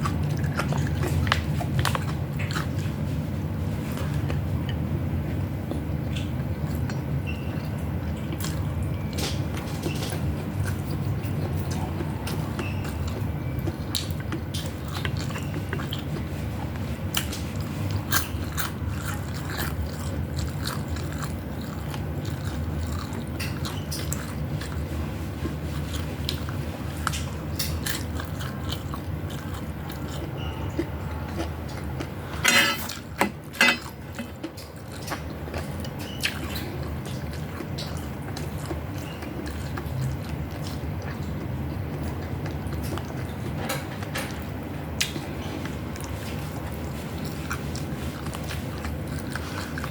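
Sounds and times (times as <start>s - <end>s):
people biting and chewing: 0.0s - 49.9s
steady low hum: 0.0s - 49.9s
utensils clicking on dishes: 32.4s - 35.2s.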